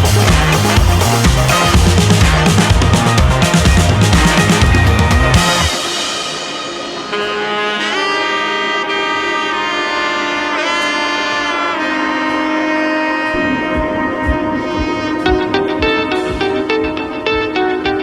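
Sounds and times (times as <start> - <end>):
background music: 0.0 - 18.0
melodic lead with pitch slides: 13.2 - 18.0.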